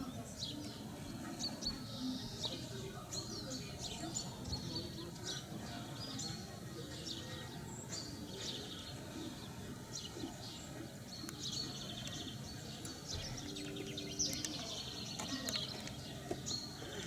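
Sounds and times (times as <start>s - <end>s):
small songbirds chirping: 0.0s - 17.0s
bird trill: 9.9s - 17.0s.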